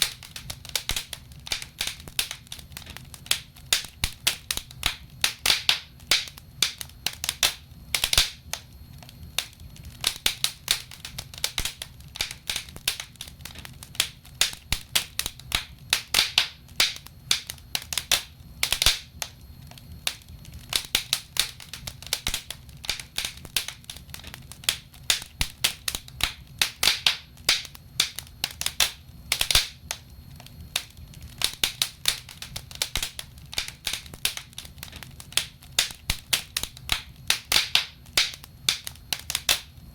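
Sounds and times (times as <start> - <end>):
logs crackling in a fireplace: 0.0 - 39.9.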